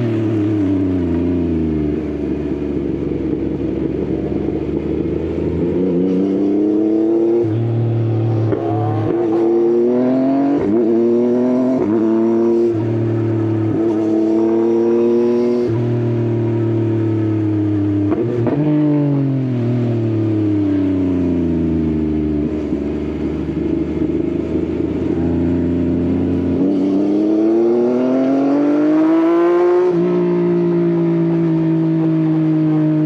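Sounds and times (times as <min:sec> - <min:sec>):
motorcycle engine accelerating: 0:00.0 - 0:33.0.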